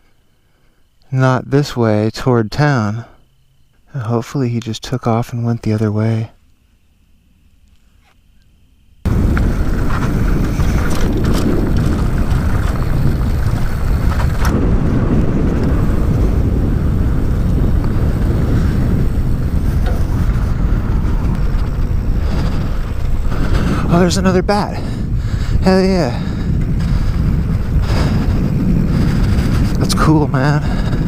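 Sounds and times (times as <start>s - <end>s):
wind buffeting microphone: 9.0s - 31.0s.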